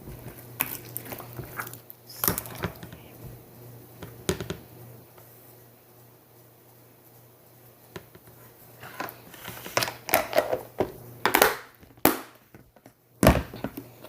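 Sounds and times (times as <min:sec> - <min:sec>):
slime squishing and crackling: 0:00.0 - 0:02.8.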